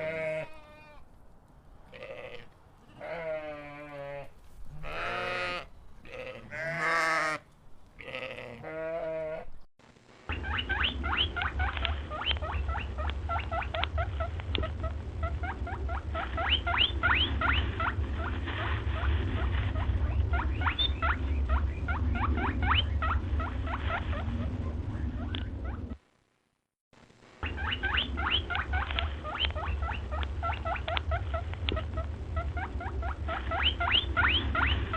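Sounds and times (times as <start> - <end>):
livestock bleating: 0.0 - 1.0, 1.9 - 7.4, 8.0 - 9.5
steady low rumble: 9.8 - 26.3, 27.1 - 34.9
small animals squeaking: 10.3 - 26.0, 27.4 - 34.9.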